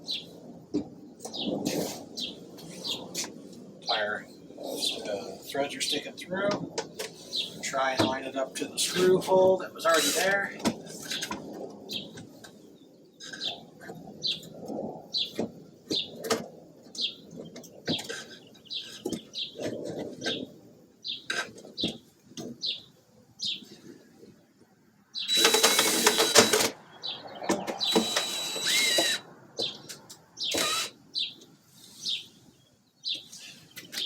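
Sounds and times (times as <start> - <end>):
power drill whining: 9.9 - 10.4, 25.3 - 26.8, 27.8 - 29.2, 30.5 - 31.0.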